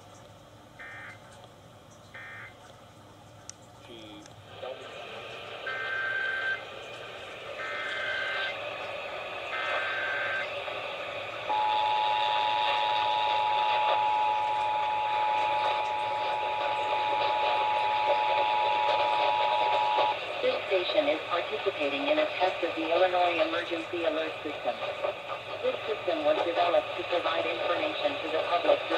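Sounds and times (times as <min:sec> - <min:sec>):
radio static: 0:07.4 - 0:08.8, 0:09.5 - 0:10.9, 0:11.5 - 0:28.9
two-tone attention signal: 0:11.5 - 0:20.2.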